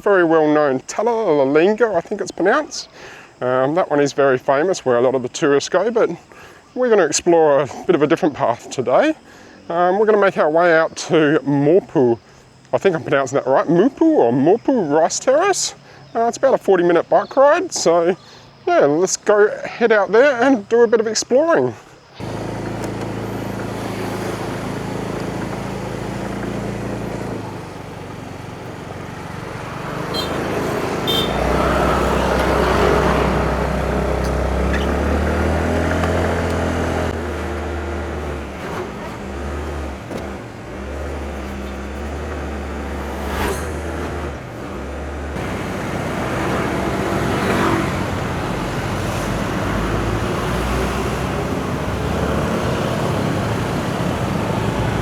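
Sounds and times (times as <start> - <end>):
vehicle engines passing: 22.1 - 55.0.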